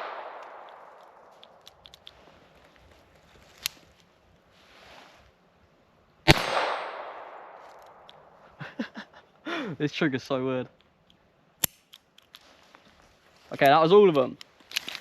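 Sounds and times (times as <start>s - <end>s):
pistol shot echoing: 0.0s - 1.3s, 6.3s - 7.6s.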